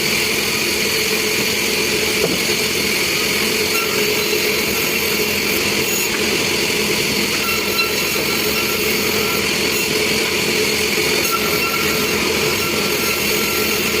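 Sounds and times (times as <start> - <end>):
sawmill machinery running: 0.0 - 14.0.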